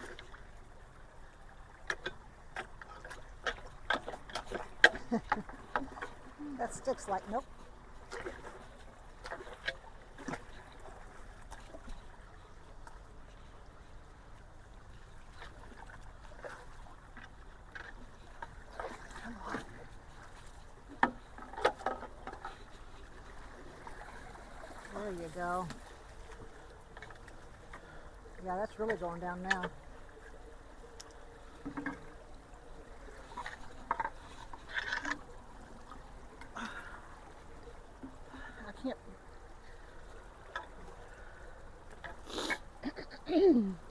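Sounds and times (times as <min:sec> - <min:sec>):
water rushing into culvert: 0:00.0 - 0:11.8, 0:14.2 - 0:31.0
water splashes: 0:00.0 - 0:43.9.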